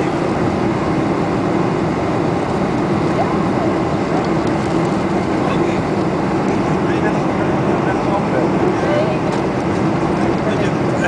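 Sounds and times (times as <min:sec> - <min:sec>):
airflow rush in cabin: 0:00.0 - 0:11.0
jet engines humming: 0:00.0 - 0:11.0.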